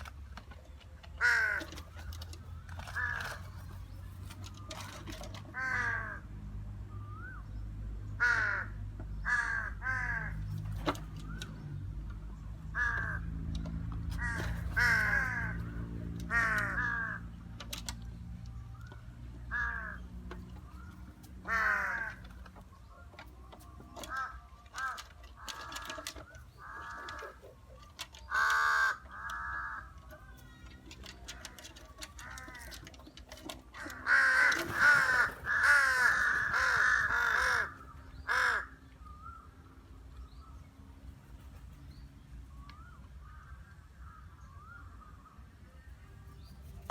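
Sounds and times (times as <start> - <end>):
crows cawing: 1.2 - 2.0, 2.8 - 3.6, 5.5 - 6.4, 8.2 - 10.4, 12.7 - 13.3, 14.2 - 17.4, 19.4 - 20.2, 21.4 - 22.5, 23.9 - 27.5, 28.1 - 33.0, 33.7 - 38.8.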